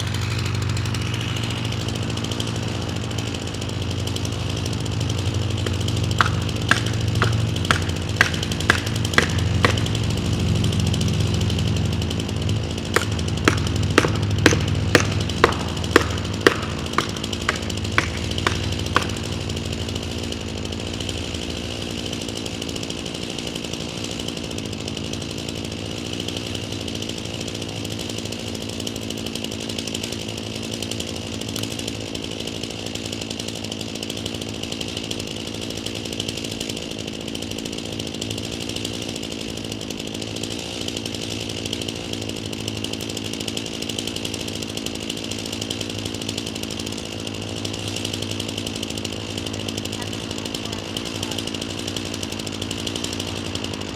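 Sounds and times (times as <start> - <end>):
chainsaw running: 0.0 - 53.9
sharp knocks: 5.6 - 10.0, 12.9 - 19.4.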